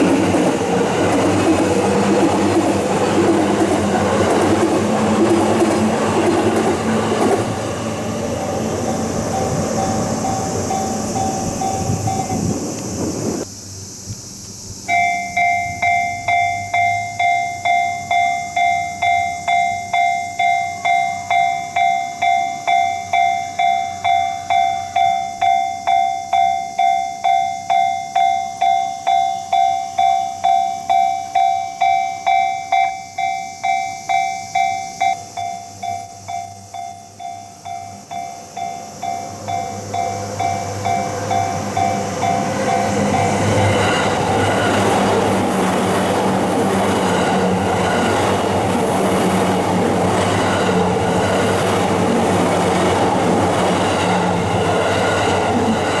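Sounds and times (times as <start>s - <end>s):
railroad crossing bell ringing: 0.0s - 13.5s, 14.8s - 56.0s
approaching train rumble: 0.0s - 20.0s, 34.5s - 56.0s.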